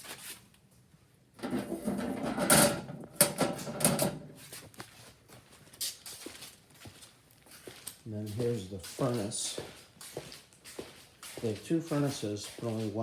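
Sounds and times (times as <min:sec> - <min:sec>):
handling rustling and clattering: 0:01.4 - 0:05.0.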